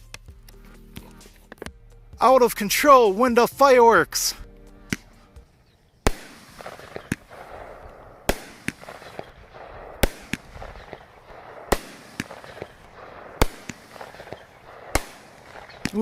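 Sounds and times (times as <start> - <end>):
firework pops and crackle: 1.0 - 1.8, 6.1 - 16.0
firework bangs: 6.0 - 16.0.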